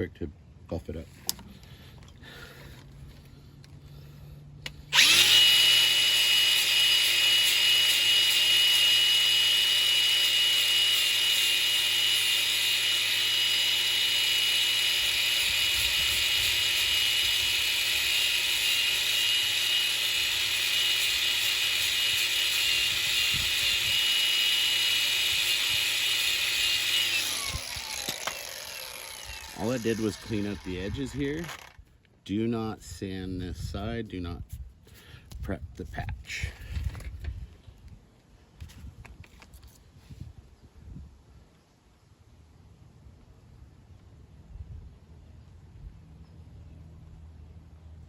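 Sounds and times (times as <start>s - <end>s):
power sander whining: 4.6s - 32.0s.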